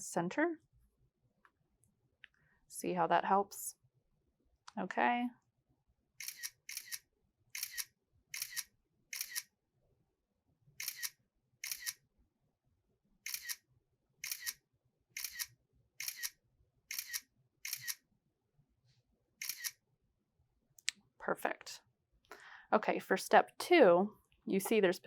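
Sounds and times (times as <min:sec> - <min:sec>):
camera shutter clicks: 0:06.2 - 0:07.0, 0:07.6 - 0:09.5, 0:10.8 - 0:12.0, 0:13.3 - 0:13.6, 0:15.2 - 0:18.0, 0:19.4 - 0:19.8.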